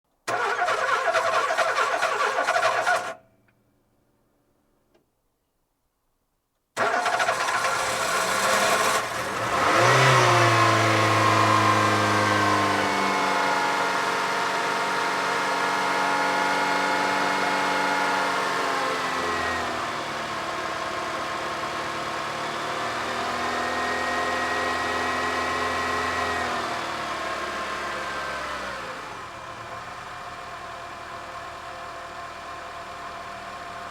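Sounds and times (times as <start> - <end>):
car starter cranking: 0.3 - 3.2, 6.8 - 9.2
car engine revving and idling: 6.8 - 33.9.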